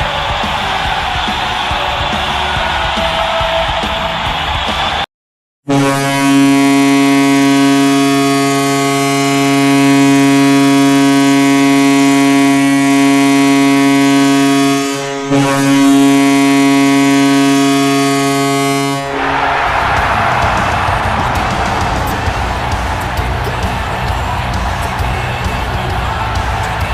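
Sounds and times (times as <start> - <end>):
crowd noise: 0.0 - 5.0, 19.0 - 26.9
music: 0.0 - 5.0, 19.4 - 26.9
loud deep goal horn: 5.7 - 26.9.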